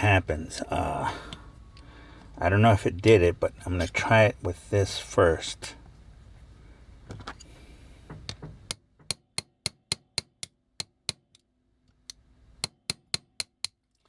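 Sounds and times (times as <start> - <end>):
metal tool tapping a rivet: 8.1 - 11.4, 12.1 - 13.8.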